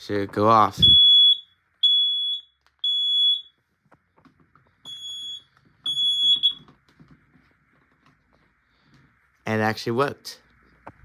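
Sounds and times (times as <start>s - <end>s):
smoke alarm beeping: 0.8s - 3.6s, 4.8s - 6.7s.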